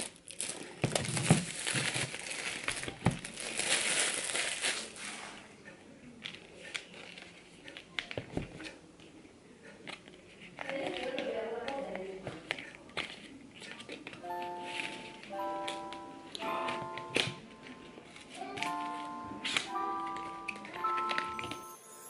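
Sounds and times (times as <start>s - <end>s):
packaging crinkling and tearing: 0.0s - 5.4s.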